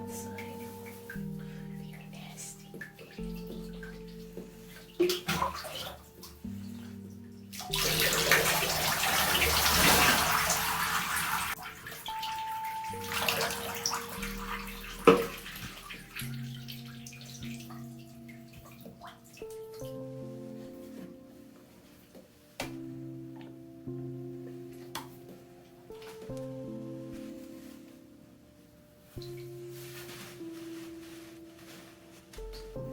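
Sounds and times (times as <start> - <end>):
water running into a bathtub: 0.0 - 19.9
background music with held notes: 0.0 - 32.9.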